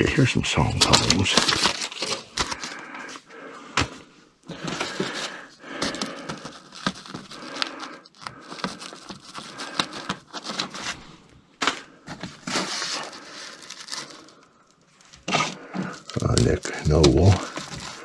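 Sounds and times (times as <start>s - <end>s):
records rustling and knocking: 0.7s - 2.7s.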